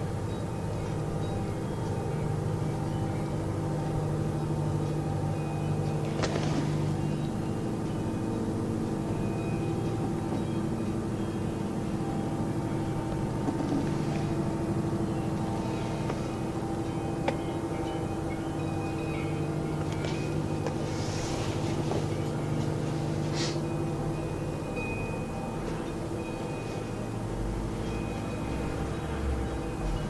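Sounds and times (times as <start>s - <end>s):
low droning hum: 0.0s - 30.0s.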